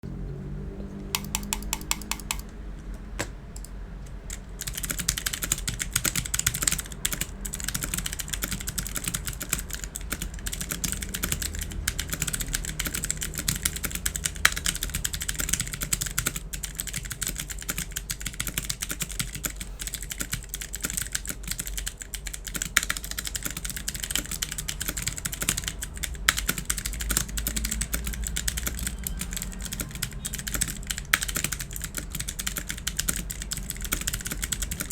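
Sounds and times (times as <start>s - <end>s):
mechanical keyboard key clicks: 1.1s - 2.5s, 20.2s - 34.9s.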